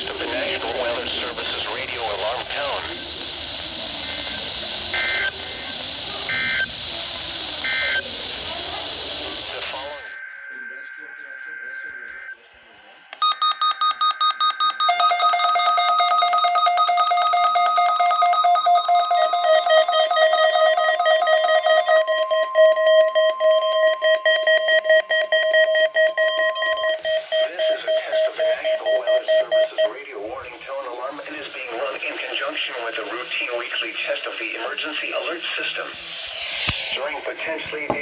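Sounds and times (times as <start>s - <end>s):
steady high tone: 14.2s - 30.6s
pulsing alert tones: 14.8s - 27.4s.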